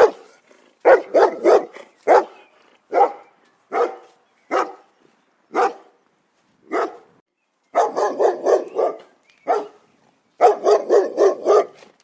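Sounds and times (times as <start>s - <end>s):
dog barking: 0.0s - 4.8s, 5.5s - 5.9s, 6.7s - 7.1s, 7.8s - 9.8s, 10.4s - 11.8s.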